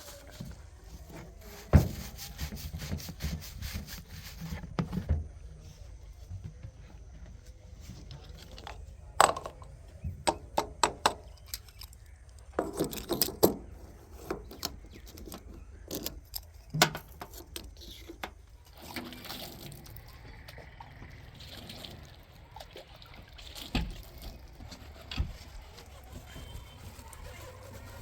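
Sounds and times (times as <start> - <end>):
diesel engine rumble: 7.0 - 28.0
metallic clanks and knocks: 9.2 - 11.8, 12.5 - 18.4.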